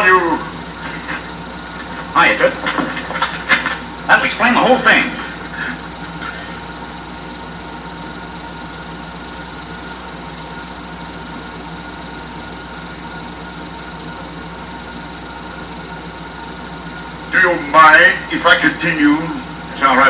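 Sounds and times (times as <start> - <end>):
film projector clatter: 0.0 - 20.0
steady hum: 0.0 - 20.0.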